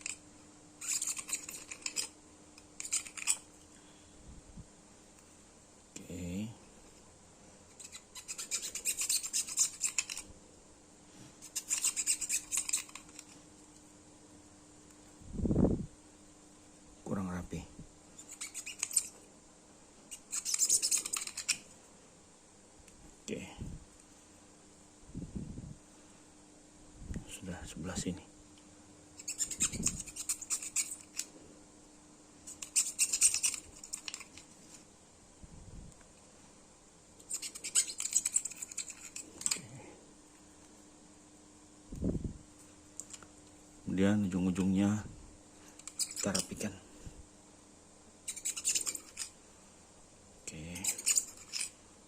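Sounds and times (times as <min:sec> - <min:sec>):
utility knife cutting strokes: 0:07.8 - 0:10.2, 0:11.4 - 0:13.2, 0:32.5 - 0:34.3
rasping trimming strokes: 0:11.4 - 0:13.3.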